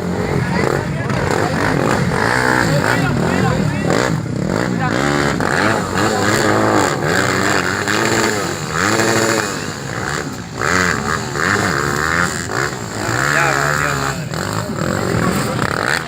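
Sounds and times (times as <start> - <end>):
motorcycle engines revving: 0.0 - 16.0.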